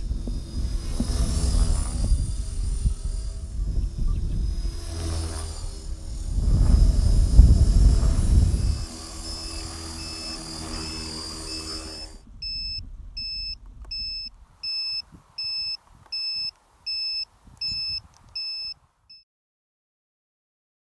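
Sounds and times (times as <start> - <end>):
wind buffeting microphone: 0.0 - 18.4
rc helicopter motor whine: 0.0 - 18.8
high electronic beeps: 8.7 - 19.2.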